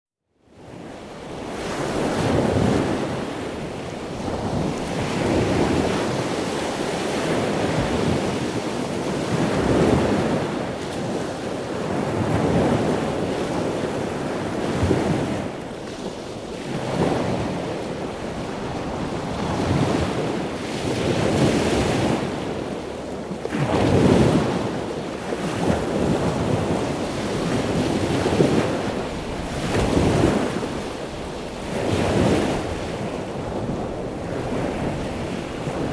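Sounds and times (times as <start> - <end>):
surf washing: 1.4 - 35.9
wind blowing over microphone: 23.6 - 35.9.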